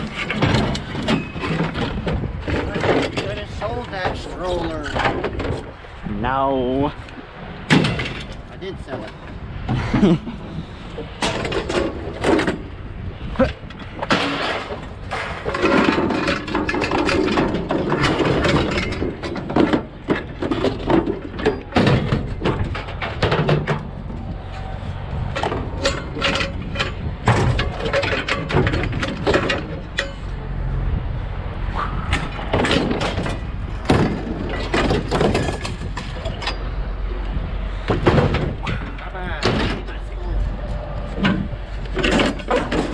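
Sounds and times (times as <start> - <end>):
hard objects knocking and clattering: 0.0 - 5.8, 13.4 - 24.2, 25.2 - 30.4, 32.1 - 36.7, 37.7 - 40.0, 41.1 - 42.9
scraping and rattling: 0.0 - 9.3, 10.0 - 30.5, 31.6 - 42.9
low engine rumble: 0.0 - 42.9.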